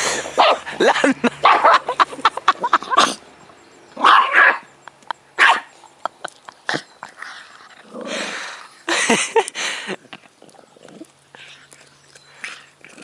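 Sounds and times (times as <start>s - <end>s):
dog barking: 0.4s - 0.6s, 1.4s - 1.9s, 4.0s - 4.6s, 5.4s - 5.7s.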